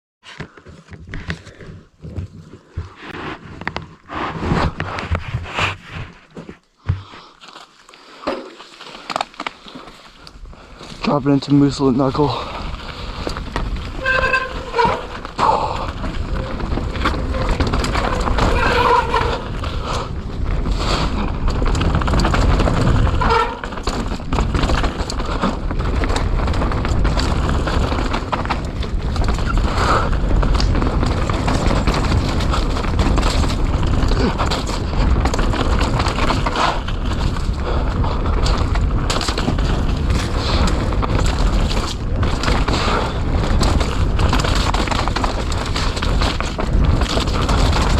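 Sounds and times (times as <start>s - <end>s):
bike tyre noise on dirt: 0.2s - 47.9s
bike knocking and rattling: 8.2s - 47.9s
wind buffeting: 10.4s - 47.9s.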